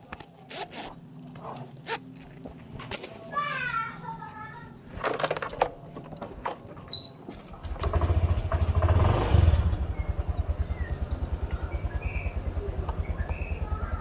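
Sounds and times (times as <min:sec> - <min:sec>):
small engine starting and idling: 0:06.8 - 0:14.0.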